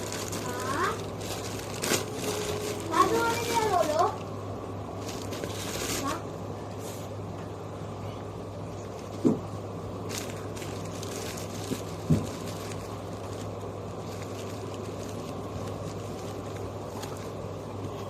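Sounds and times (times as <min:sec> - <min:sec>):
steady low hum: 0:00.0 - 0:18.0
dull thumps: 0:11.6 - 0:12.5.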